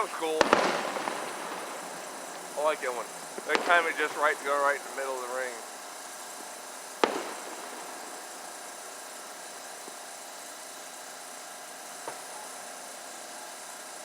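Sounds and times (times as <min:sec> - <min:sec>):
firework bang: 0:00.0 - 0:10.1
outdoor background hiss: 0:00.0 - 0:14.0
faint firework pop: 0:07.0 - 0:07.8, 0:12.0 - 0:12.5.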